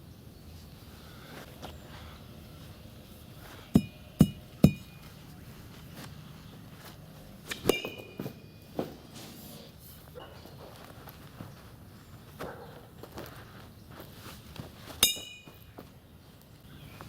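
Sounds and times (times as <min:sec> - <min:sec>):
hard blows striking a sneaker: 0:03.7 - 0:05.0.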